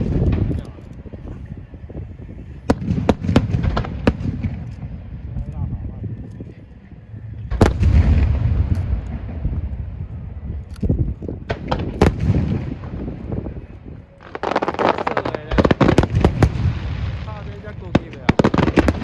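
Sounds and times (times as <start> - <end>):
crackling fireworks: 0.0 - 6.5, 7.1 - 19.0
firework bangs: 2.7 - 5.1, 7.5 - 10.0, 11.4 - 13.6, 14.2 - 19.0
firework boom: 7.5 - 10.0.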